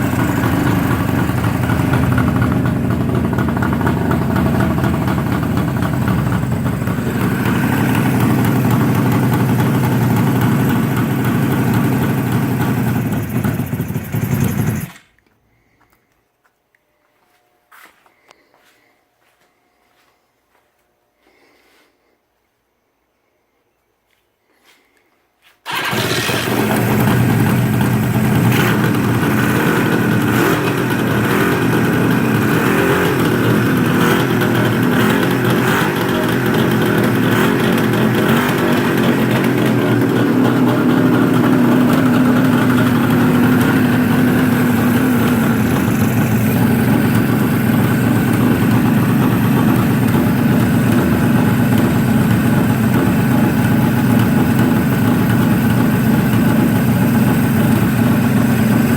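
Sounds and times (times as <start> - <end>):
two-stroke motorcycle engine running: 0.0 - 15.0, 25.7 - 58.9.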